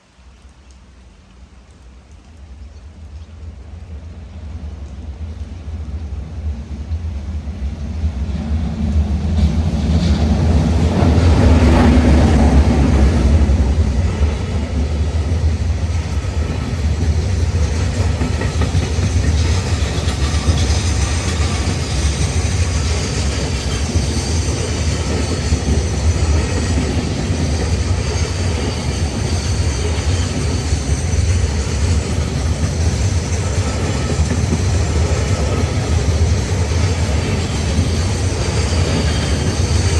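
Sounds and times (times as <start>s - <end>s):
electric locomotive passing: 2.3s - 39.9s.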